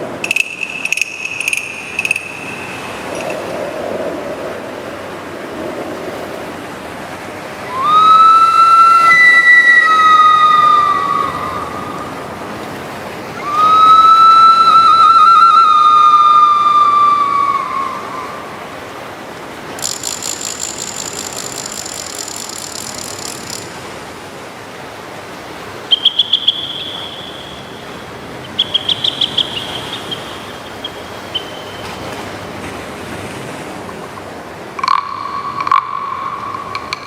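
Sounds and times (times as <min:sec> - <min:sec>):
fast high ringing rattle: 0:00.0 - 0:03.7, 0:19.8 - 0:23.8, 0:34.8 - 0:37.0
short high chirps: 0:00.2 - 0:03.5
falling-pitch whistle: 0:07.7 - 0:12.3, 0:13.4 - 0:18.6.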